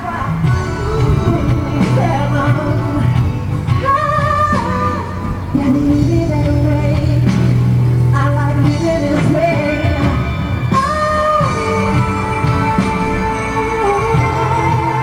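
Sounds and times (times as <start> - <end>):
pop song with sung voice: 0.0 - 15.0.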